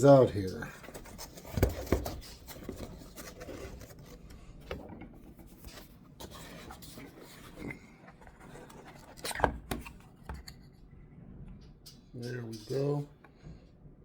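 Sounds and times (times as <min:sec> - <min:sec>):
packaging rubbing and scraping: 0:00.4 - 0:04.3.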